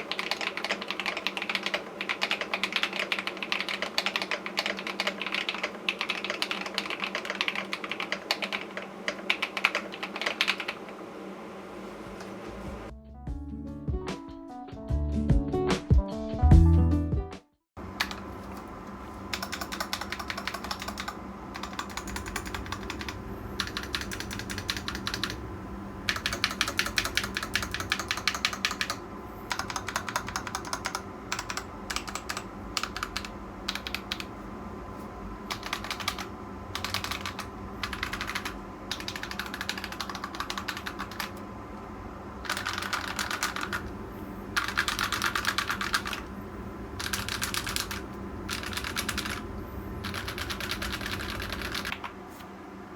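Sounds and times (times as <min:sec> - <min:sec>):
mechanical keyboard typing: 0:00.0 - 0:10.8, 0:18.0 - 0:18.7, 0:19.3 - 0:34.3, 0:35.5 - 0:41.4, 0:42.4 - 0:44.0, 0:44.6 - 0:46.3, 0:47.0 - 0:52.1.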